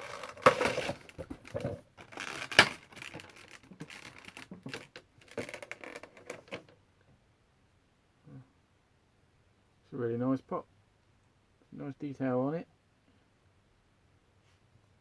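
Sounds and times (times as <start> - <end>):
packaging crinkling and clicking: 0.0 - 6.7.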